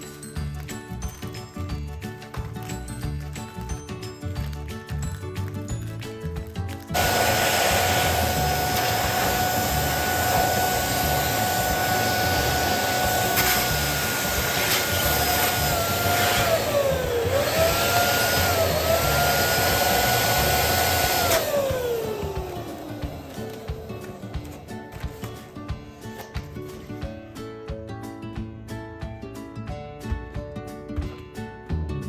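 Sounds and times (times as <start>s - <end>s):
electric balloon pump whining: 6.8s - 25.9s.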